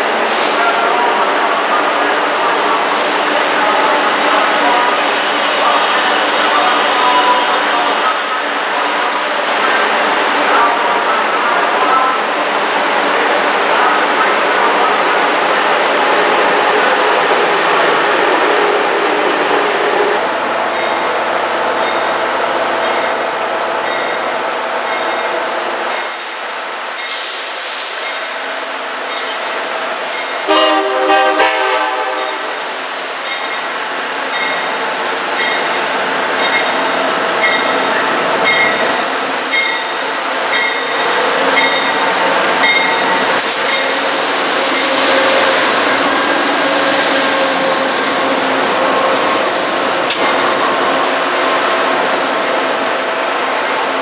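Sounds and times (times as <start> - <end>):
train running on rails: 0.0 - 54.0
train horn blast: 30.5 - 32.5.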